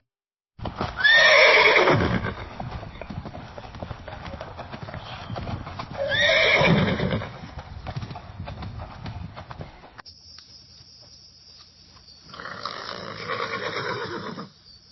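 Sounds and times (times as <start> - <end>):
horse whinnying: 0.8 - 2.5, 5.1 - 7.4, 12.3 - 14.5
hooves knocking: 2.4 - 6.6, 7.2 - 12.1.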